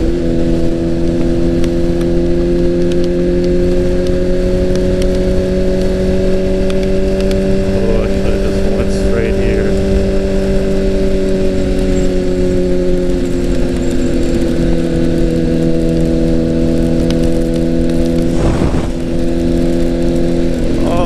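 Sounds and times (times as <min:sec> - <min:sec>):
motorcycle engine cruising: 0:00.0 - 0:21.0
wind rushing: 0:18.2 - 0:19.8
brief whoosh: 0:18.3 - 0:19.2.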